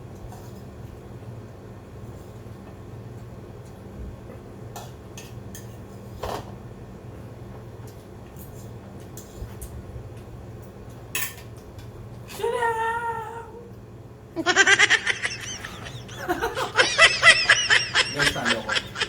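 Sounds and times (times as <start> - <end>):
person laughing high-pitched: 14.4 - 19.0.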